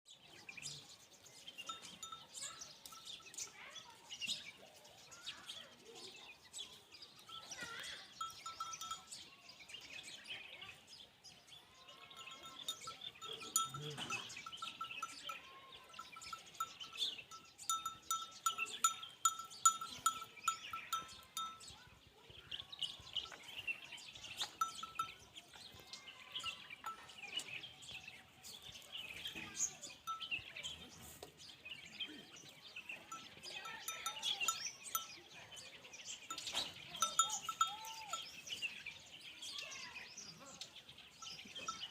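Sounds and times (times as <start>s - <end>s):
birds chirping: 0.1s - 41.9s.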